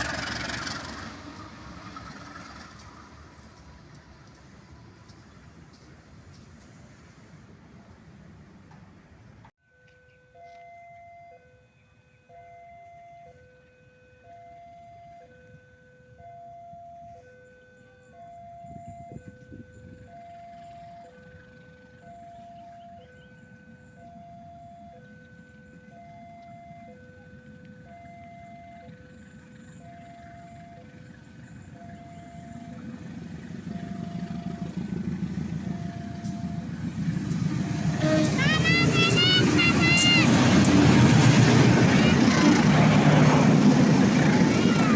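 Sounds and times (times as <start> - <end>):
train rumble: 0.0 - 9.5, 18.2 - 44.9
level crossing two-tone alarm: 12.3 - 13.5, 14.1 - 19.3, 21.9 - 29.1.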